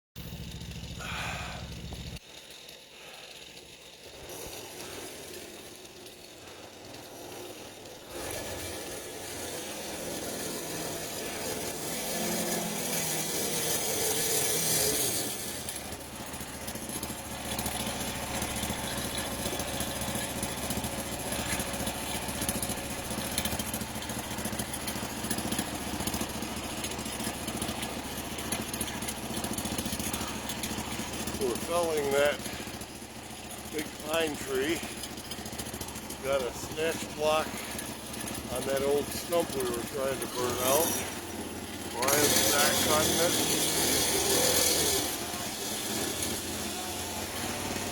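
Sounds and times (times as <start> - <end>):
loud hissing: 0.2 - 2.1, 36.1 - 41.2
engine running: 0.2 - 47.9.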